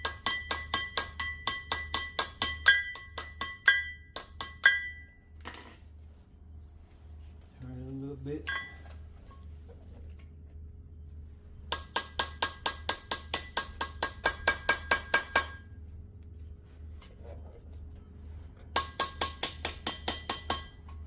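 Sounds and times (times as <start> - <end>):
hammer tapping on steel tool: 0.0 - 5.1, 11.7 - 15.6, 18.8 - 21.0.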